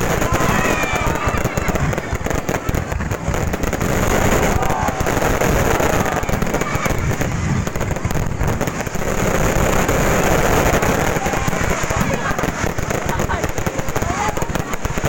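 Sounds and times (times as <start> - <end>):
fireworks crackling: 0.0 - 15.0.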